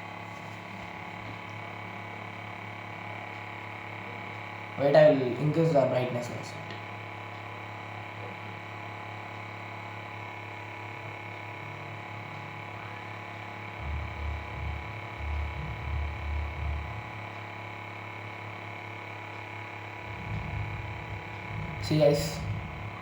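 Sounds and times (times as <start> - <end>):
electrical mains hum: 0.0 - 23.0
low muffled bumps: 13.8 - 17.2, 20.0 - 23.0.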